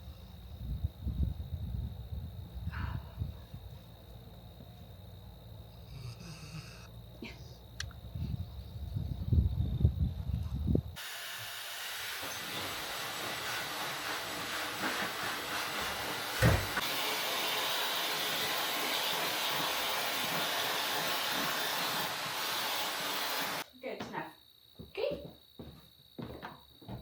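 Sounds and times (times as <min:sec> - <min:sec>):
blow dryer hissing: 0:11.0 - 0:23.6
short thump: 0:16.4 - 0:16.8.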